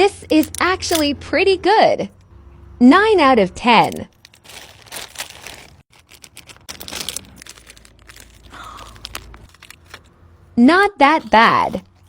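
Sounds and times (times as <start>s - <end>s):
snack packaging crinkling: 3.8s - 10.1s.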